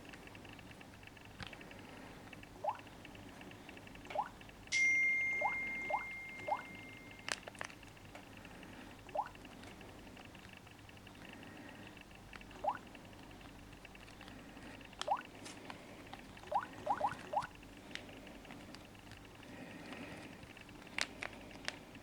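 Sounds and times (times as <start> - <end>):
faint rising chirps: 4.2 - 7.3
high ding: 4.7 - 7.3.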